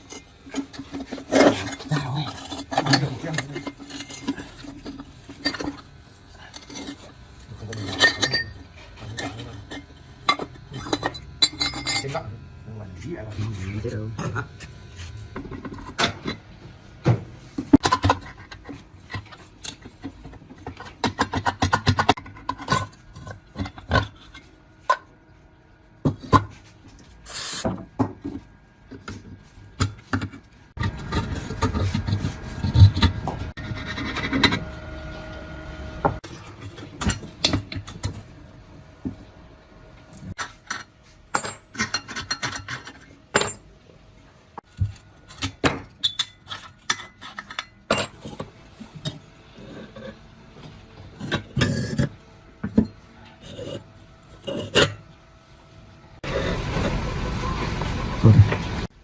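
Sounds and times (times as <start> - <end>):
scraping and rubbing on metal: 0.0 - 12.3, 12.9 - 16.4, 30.8 - 34.8, 46.0 - 50.3
tools knocking and clicking on metal: 40.4 - 43.6.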